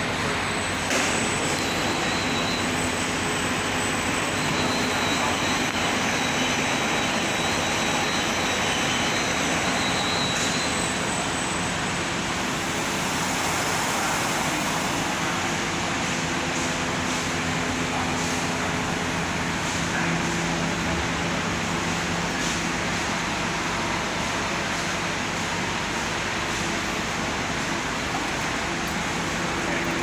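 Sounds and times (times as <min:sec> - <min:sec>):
cutting saw whining: 0:00.0 - 0:14.6
thin high tone: 0:00.1 - 0:15.4.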